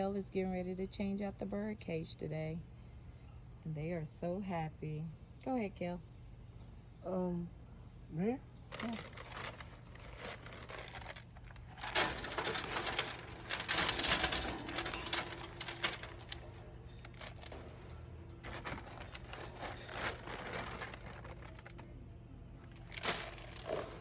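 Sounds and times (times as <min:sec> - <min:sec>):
bedding rustling and scratching: 0:08.7 - 0:22.0, 0:22.6 - 0:24.0.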